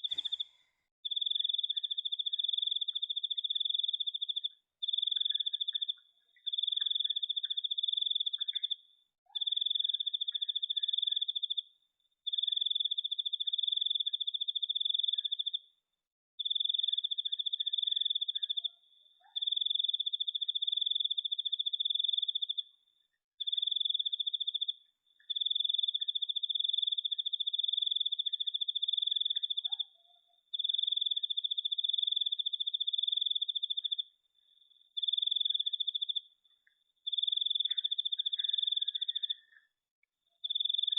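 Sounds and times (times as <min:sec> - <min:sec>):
faint short chirps: 0:00.0 - 0:00.8
cricket trilling: 0:00.0 - 0:08.8, 0:23.4 - 0:36.3, 0:37.0 - 0:39.7, 0:40.4 - 0:40.9.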